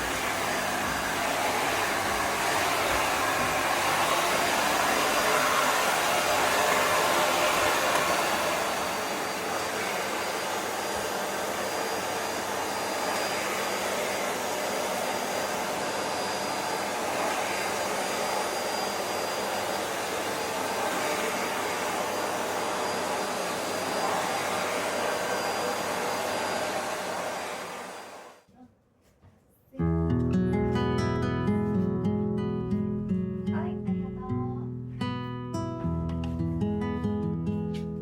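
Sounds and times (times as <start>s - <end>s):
vacuum cleaner running: 0.0s - 28.4s.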